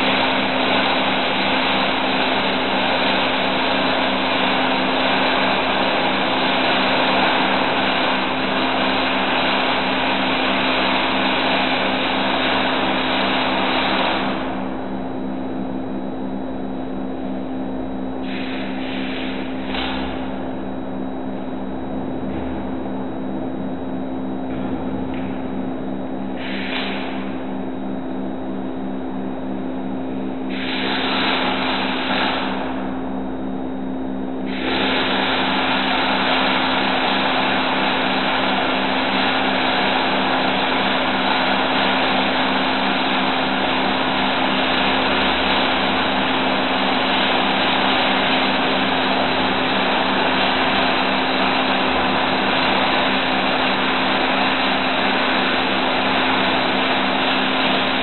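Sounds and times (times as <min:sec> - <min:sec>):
welding arc crackling and hissing: 0:00.0 - 0:14.8, 0:18.2 - 0:20.6, 0:26.3 - 0:27.6, 0:30.1 - 0:33.0, 0:34.4 - 0:58.0
steady machine hum: 0:00.0 - 0:58.0.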